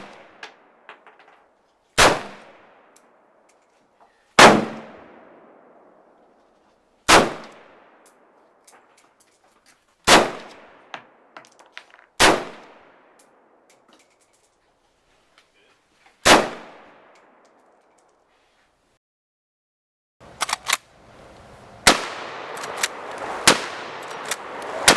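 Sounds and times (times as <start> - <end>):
gunshots with ringing echo: 4.4 - 6.2, 20.4 - 24.9
small metallic clicks: 20.2 - 21.6, 22.5 - 23.3, 24.0 - 24.8.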